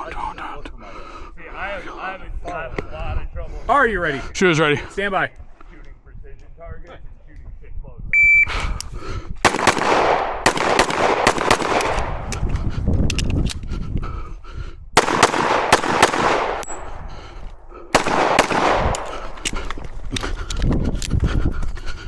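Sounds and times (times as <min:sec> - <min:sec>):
pistol shots with ringing echo: 0:09.4 - 0:12.4, 0:15.0 - 0:17.1, 0:17.9 - 0:19.5.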